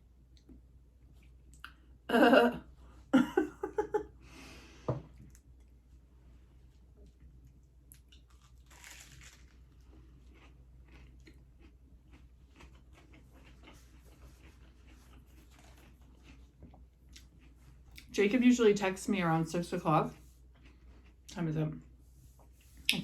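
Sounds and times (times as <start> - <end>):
person chewing and crunching: 7.8 - 18.1, 20.1 - 22.0.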